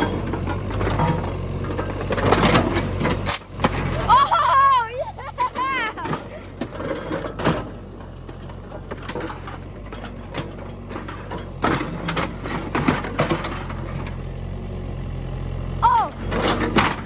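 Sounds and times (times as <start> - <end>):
metal crunches and clanks: 0.0 - 4.2, 5.3 - 14.4, 16.2 - 17.0
excavator engine running: 0.0 - 17.0.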